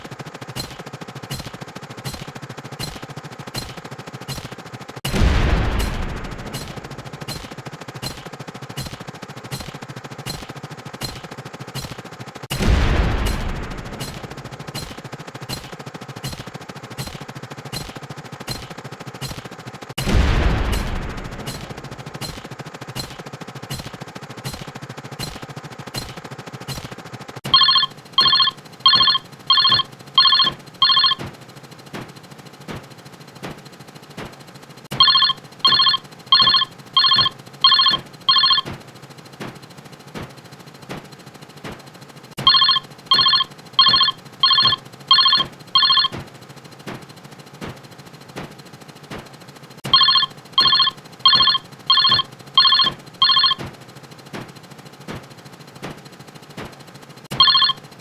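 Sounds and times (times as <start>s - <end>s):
loud boom: 5.1s - 7.2s, 12.5s - 14.5s, 20.0s - 22.0s
short explosion sound effects: 5.1s - 7.5s, 12.5s - 14.9s, 20.0s - 22.4s
telephone ringing: 27.5s - 31.2s, 35.0s - 38.7s, 42.4s - 46.2s, 49.9s - 53.6s, 57.3s - 57.8s.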